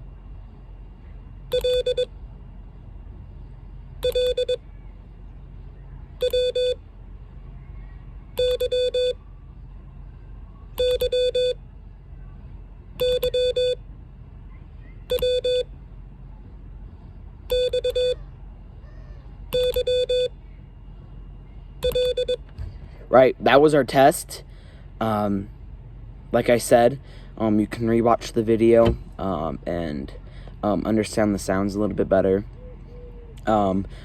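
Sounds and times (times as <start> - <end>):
morse code beeps: 1.5 - 2.1, 4.0 - 4.6, 6.2 - 6.8, 8.4 - 9.2, 10.8 - 11.6, 13.0 - 13.8, 15.1 - 15.7, 17.5 - 18.2, 19.5 - 20.3, 21.8 - 22.4.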